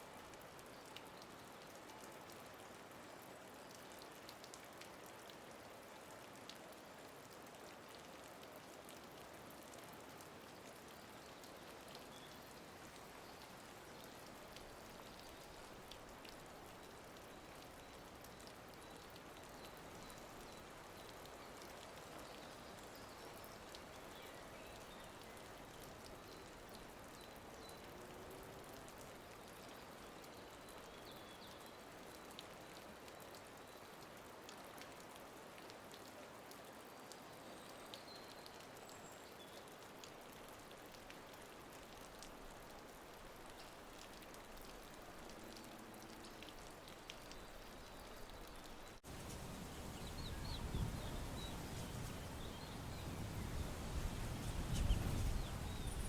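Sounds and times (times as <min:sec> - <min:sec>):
faint rain pattering: 0:00.0 - 0:56.0.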